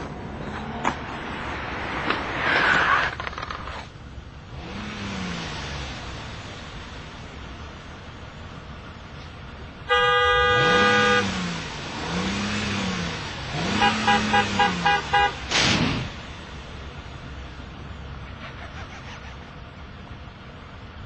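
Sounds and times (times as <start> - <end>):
car horn beeping: 9.8 - 11.5, 13.6 - 15.5.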